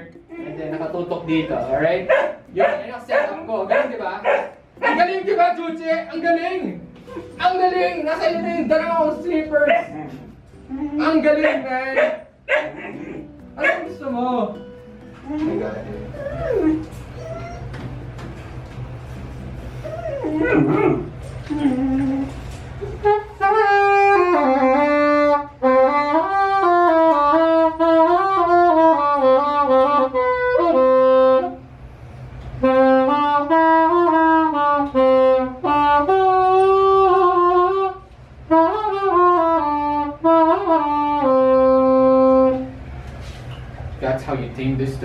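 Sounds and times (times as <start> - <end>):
saxophone melody: 12.8 - 18.2, 18.8 - 42.9.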